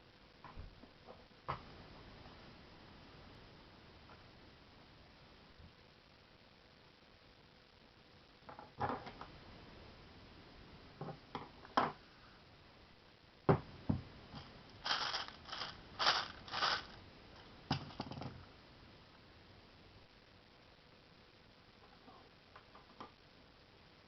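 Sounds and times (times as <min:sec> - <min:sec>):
small objects knocking and clicking: 0:14.4 - 0:17.0, 0:17.7 - 0:18.4
short rustling scrapes: 0:14.8 - 0:17.0.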